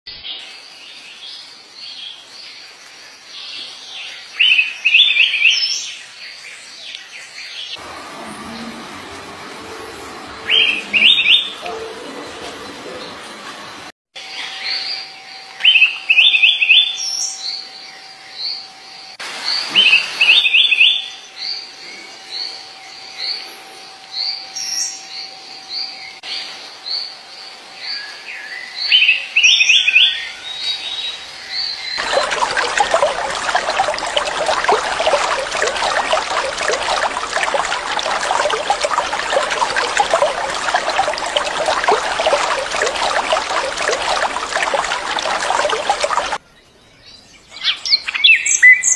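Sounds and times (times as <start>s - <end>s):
running water: 7.8s - 13.9s, 32.0s - 46.4s
songbird singing: 10.4s - 13.2s, 27.8s - 48.9s.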